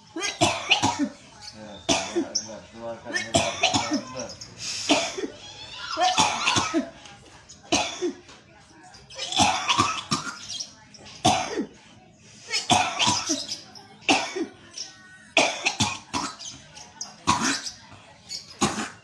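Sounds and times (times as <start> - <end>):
person coughing and hacking: 0.2 - 1.2, 1.9 - 2.4, 3.2 - 4.1, 4.9 - 5.3, 6.0 - 6.9, 7.7 - 8.2, 9.2 - 10.4, 11.2 - 11.7, 12.6 - 13.4, 14.1 - 14.5, 15.4 - 16.4, 17.3 - 17.7, 18.6 - 19.0.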